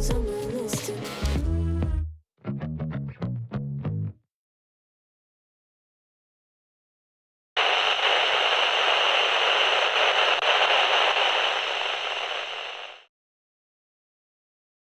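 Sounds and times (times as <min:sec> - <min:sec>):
loud static hiss: 0:07.6 - 0:13.1.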